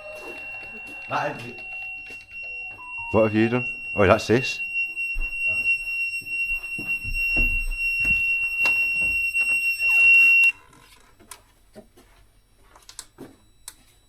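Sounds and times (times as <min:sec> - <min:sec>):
high-pitched alarm tone: 0:00.0 - 0:10.6.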